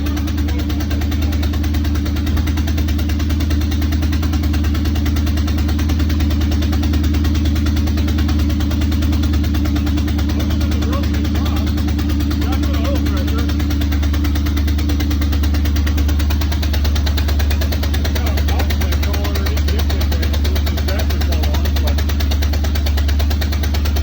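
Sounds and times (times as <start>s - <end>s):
car engine idling with pulsing: 0.0s - 24.0s.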